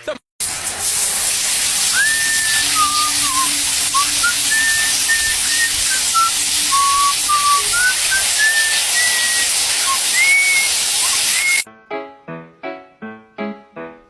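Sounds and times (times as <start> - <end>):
steady loud hiss: 0.4 - 11.7
person whistling a tune: 1.9 - 11.7.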